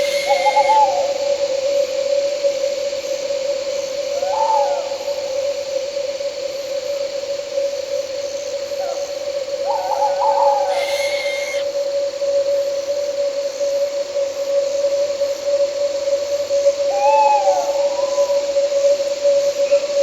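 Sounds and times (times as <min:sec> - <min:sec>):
owl hooting: 0:00.0 - 0:01.3, 0:09.7 - 0:11.7
crickets and night insects: 0:00.0 - 0:20.0.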